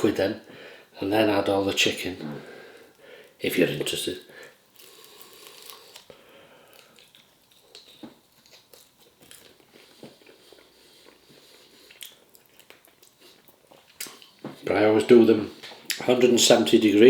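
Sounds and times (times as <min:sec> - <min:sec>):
person chewing and crunching: 0:04.7 - 0:14.5.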